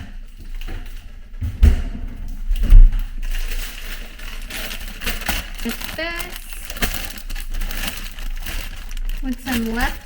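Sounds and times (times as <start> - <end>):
rustling: 2.4 - 10.0.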